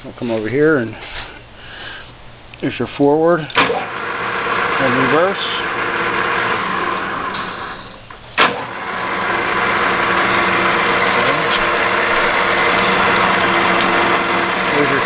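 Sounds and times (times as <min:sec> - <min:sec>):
lathe motor running: 0:03.6 - 0:15.0
sharp clunk of lathe switch: 0:08.4 - 0:08.7.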